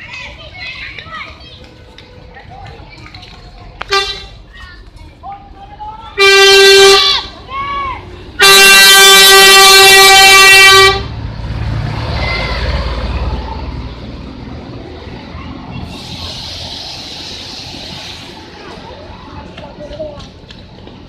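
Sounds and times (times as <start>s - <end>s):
bus engine rumbling: 0.0s - 21.0s
bus horn blowing: 3.9s - 4.3s, 6.2s - 7.3s, 8.4s - 11.2s
hiss: 15.8s - 18.6s.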